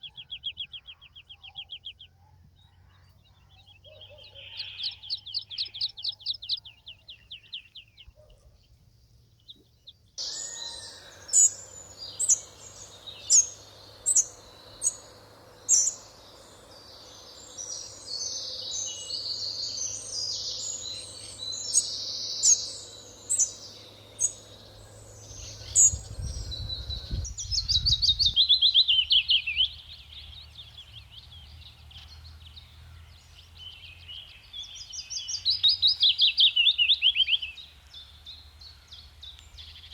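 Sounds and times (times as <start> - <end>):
songbirds singing: 0.0 - 39.9
fast bird trill: 3.7 - 8.2, 10.2 - 29.7
sharp high bird chirps: 3.9 - 8.2, 10.2 - 29.8.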